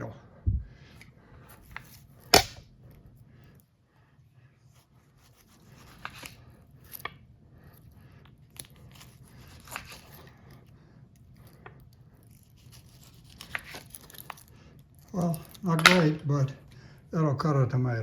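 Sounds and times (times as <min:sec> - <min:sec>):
knife sawing through tomato: 0:05.0 - 0:06.4, 0:08.8 - 0:10.3, 0:12.4 - 0:13.9.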